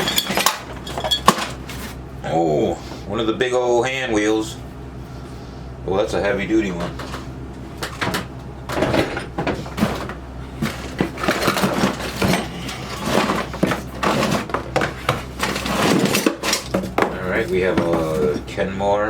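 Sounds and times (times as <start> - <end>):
metal parts knocking and clattering: 0.0 - 1.9, 6.7 - 18.4
rustling in cardboard box: 9.6 - 18.4.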